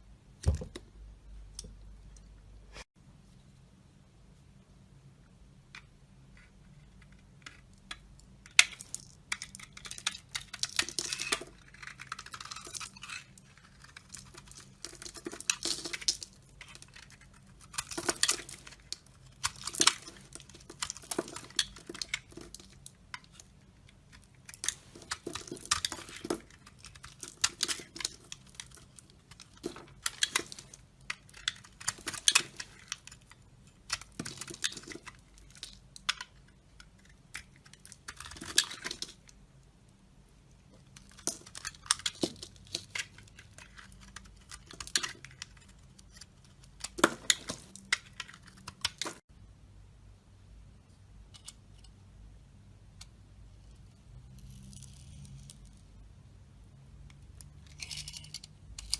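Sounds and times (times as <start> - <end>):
knife scraping dry soap: 9.3 - 22.8.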